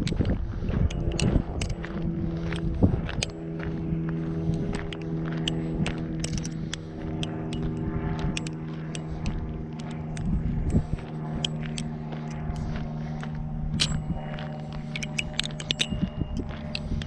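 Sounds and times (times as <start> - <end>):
butterfly knife handles clacking: 0.0 - 3.4, 4.6 - 17.0
low mechanical hum: 0.0 - 17.0.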